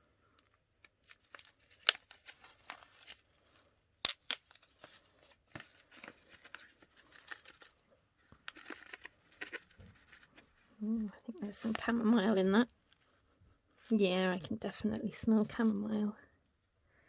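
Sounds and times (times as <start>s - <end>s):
packaging rustling: 0.4s - 13.0s.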